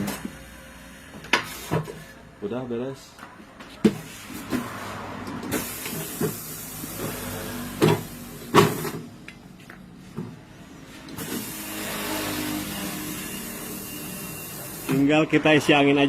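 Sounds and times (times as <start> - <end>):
air hissing: 5.4 - 9.0.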